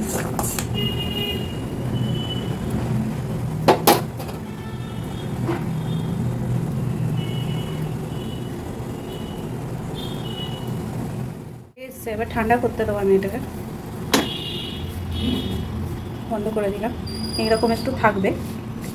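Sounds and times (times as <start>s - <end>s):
pot boiling on gas burner: 0.0s - 11.5s
sharp knocks: 3.7s - 4.4s, 14.1s - 14.4s.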